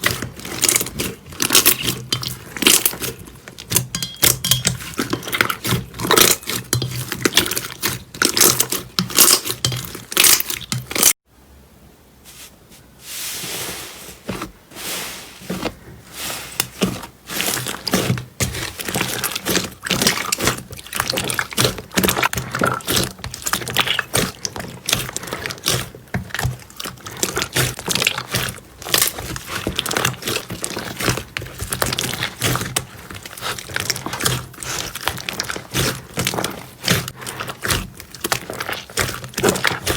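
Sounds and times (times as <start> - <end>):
slime crackling and popping: 0.0 - 11.2, 17.4 - 39.9.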